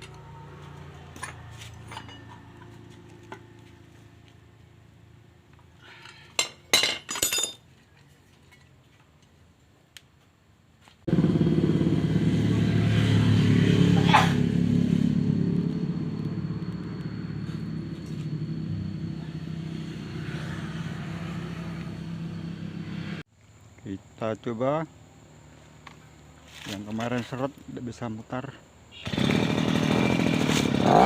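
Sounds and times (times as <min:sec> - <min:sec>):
brush cutter engine running: 0:29.0 - 0:31.0.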